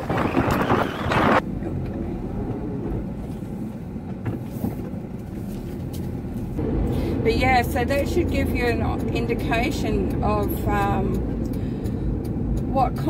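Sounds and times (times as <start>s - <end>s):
wind buffeting microphone: 0.0s - 1.4s.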